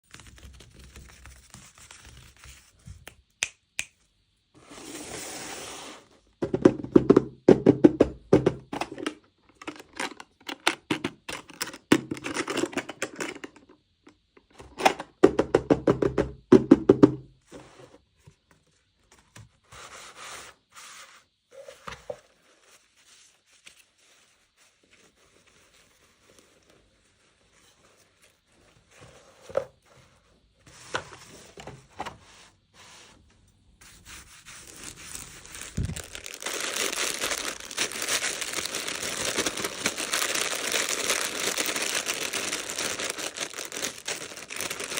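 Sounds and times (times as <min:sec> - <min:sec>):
toy packaging clicks and crinkles: 0:08.8 - 0:13.7, 0:34.6 - 0:44.9
packaging rustle: 0:34.5 - 0:44.9.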